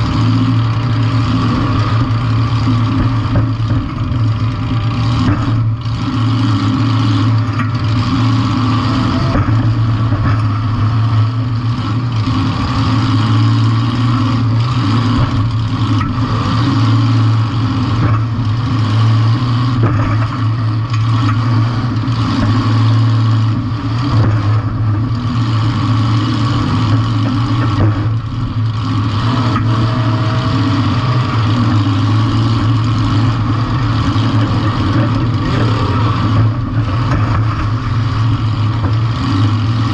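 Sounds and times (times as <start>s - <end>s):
car engine at high revs: 0.0s - 39.9s
car body knocks and rattles: 19.8s - 21.4s, 36.4s - 39.0s.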